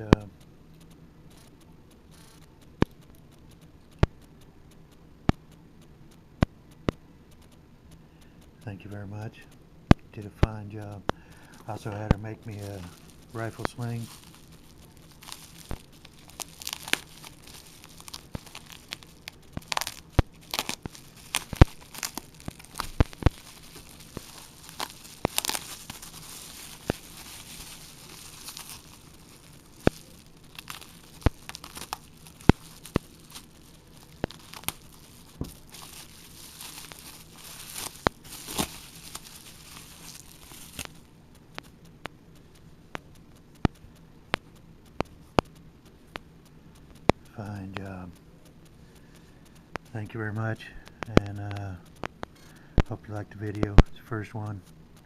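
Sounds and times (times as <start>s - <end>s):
packaging crinkling and tearing: 10.8s - 41.7s.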